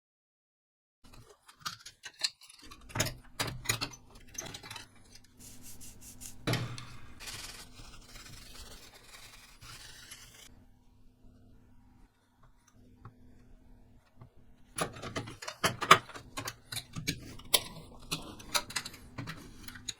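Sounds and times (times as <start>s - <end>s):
rubbing and scraping: 4.6s - 10.5s.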